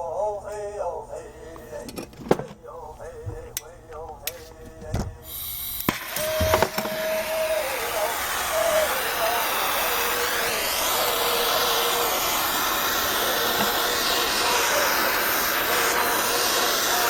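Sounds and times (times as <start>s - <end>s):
soldering torch hissing: 5.2s - 17.0s.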